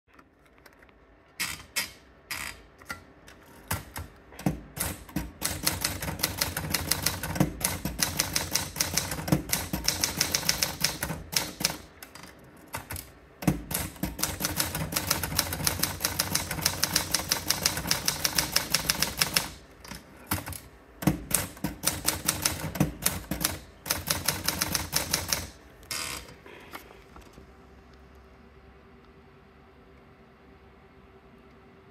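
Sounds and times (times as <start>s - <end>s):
typewriter keys clacking: 3.7s - 25.6s.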